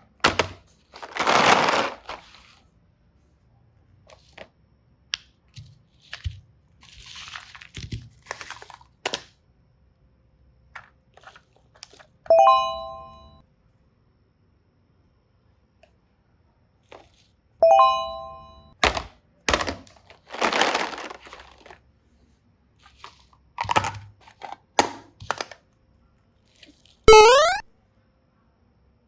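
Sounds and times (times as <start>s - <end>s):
packaging crinkling: 1.0s - 2.5s, 20.1s - 21.8s
bright chime: 12.3s - 13.4s, 17.6s - 18.7s.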